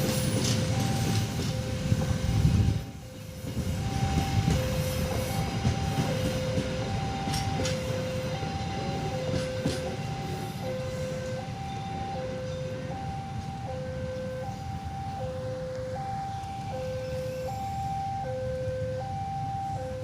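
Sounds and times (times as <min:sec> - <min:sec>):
diesel train rumbling on rails: 0:00.0 - 0:20.0
two-tone level-crossing alarm: 0:00.0 - 0:20.0.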